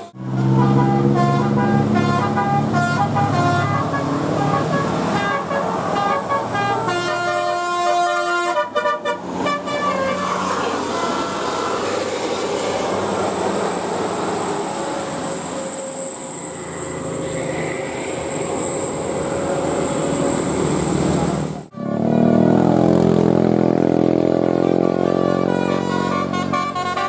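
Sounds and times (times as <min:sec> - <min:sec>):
bus engine: 0:00.0 - 0:27.0
road noise: 0:00.0 - 0:27.0
steady high whine: 0:13.0 - 0:21.6.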